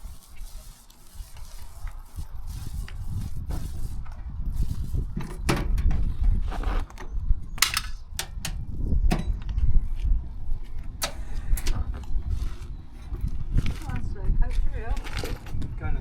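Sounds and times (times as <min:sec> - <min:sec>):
sharp clicks and knocks: 0:06.9 - 0:09.6.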